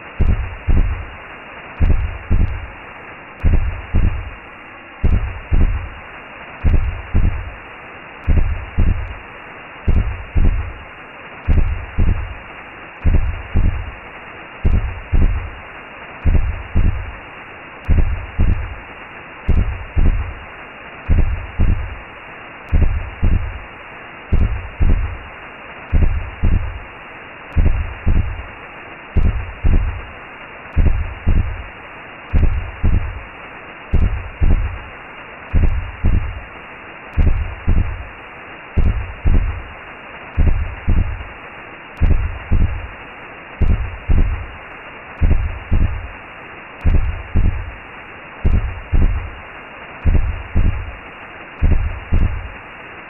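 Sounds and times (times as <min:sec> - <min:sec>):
heartbeat thumps: 0:00.0 - 0:01.2, 0:01.8 - 0:02.7, 0:03.4 - 0:04.4, 0:05.0 - 0:06.0, 0:06.6 - 0:07.6, 0:08.2 - 0:09.2, 0:09.9 - 0:10.8, 0:11.4 - 0:12.4, 0:13.0 - 0:14.0, 0:14.6 - 0:15.6, 0:16.2 - 0:17.2, 0:17.8 - 0:18.8, 0:19.5 - 0:20.4, 0:21.1 - 0:22.0, 0:22.7 - 0:23.6, 0:24.3 - 0:25.3, 0:25.9 - 0:26.8, 0:27.5 - 0:28.5, 0:29.1 - 0:30.1, 0:30.8 - 0:31.7, 0:32.3 - 0:33.3, 0:33.9 - 0:34.9, 0:35.5 - 0:36.5, 0:37.1 - 0:38.1, 0:38.8 - 0:39.7, 0:40.4 - 0:41.3, 0:42.0 - 0:43.0, 0:43.6 - 0:44.6, 0:45.2 - 0:46.2, 0:46.8 - 0:47.8, 0:48.4 - 0:49.4, 0:50.0 - 0:51.0, 0:51.6 - 0:52.6
whooshing hiss: 0:00.0 - 0:52.8.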